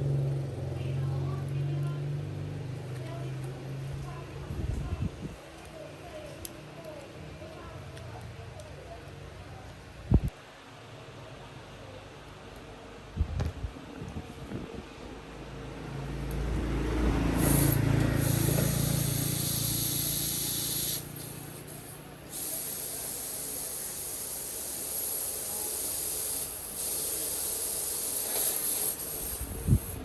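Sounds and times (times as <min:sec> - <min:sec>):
compressed air hissing: 0:16.6 - 0:30.0.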